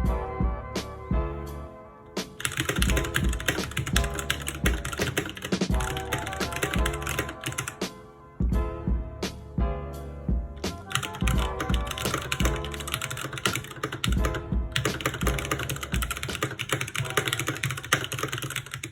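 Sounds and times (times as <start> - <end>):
music beat: 2.2 - 9.7, 10.3 - 18.9
mechanical keyboard typing: 2.4 - 7.8, 10.6 - 18.9.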